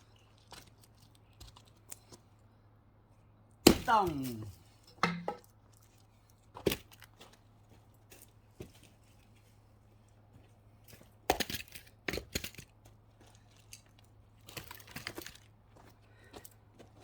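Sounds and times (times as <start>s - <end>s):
axe chopping wood: 3.6s - 5.5s
knocks of wood: 5.0s - 5.4s.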